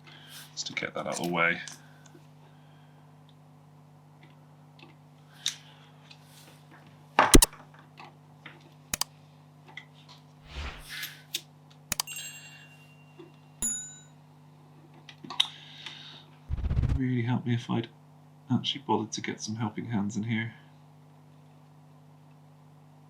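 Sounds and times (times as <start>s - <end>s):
click with metallic ring: 11.9s - 12.5s
steady low hum: 16.5s - 17.3s.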